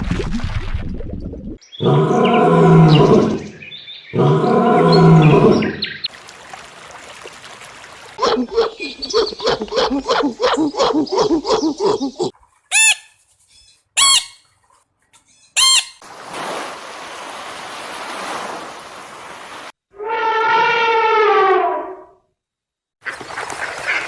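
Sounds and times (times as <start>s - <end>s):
repeated animal calls: 8.2s - 14.4s
loud bird squawks: 12.7s - 13.1s, 14.0s - 14.4s, 15.4s - 16.0s.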